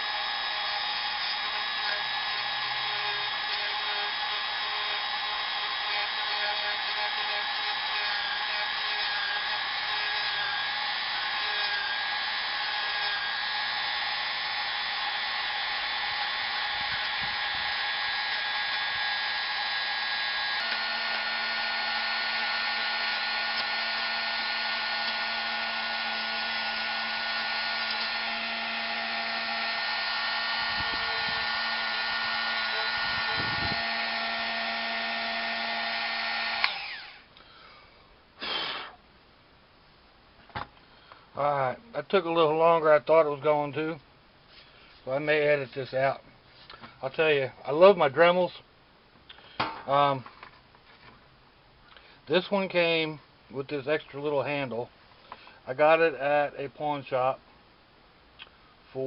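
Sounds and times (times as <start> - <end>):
rotary tool high whine: 0.0 - 37.4.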